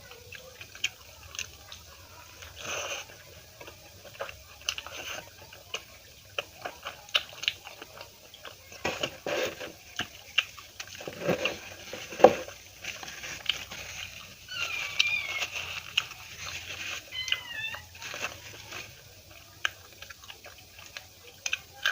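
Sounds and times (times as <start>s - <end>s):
close-miked chewing and mouth clicks: 0.0s - 21.9s
cat meowing: 14.5s - 15.9s, 17.0s - 18.1s.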